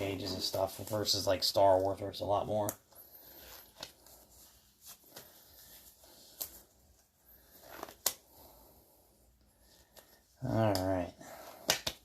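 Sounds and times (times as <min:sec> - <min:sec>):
gloves rustling: 0:00.0 - 0:12.0
glove snaps and clicks: 0:07.7 - 0:08.3, 0:09.9 - 0:12.0.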